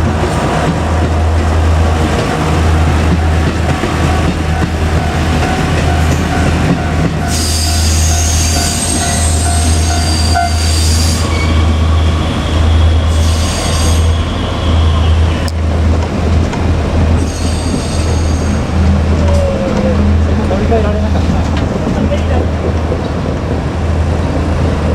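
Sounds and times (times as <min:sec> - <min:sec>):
diesel railcar humming: 0:00.0 - 0:24.9
train wheels squealing: 0:07.2 - 0:15.5, 0:17.2 - 0:18.6.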